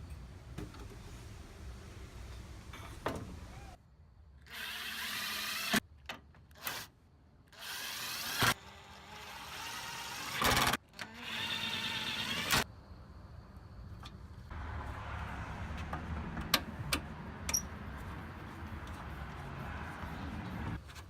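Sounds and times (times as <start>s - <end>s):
power drill running: 4.5s - 5.8s, 7.6s - 12.6s.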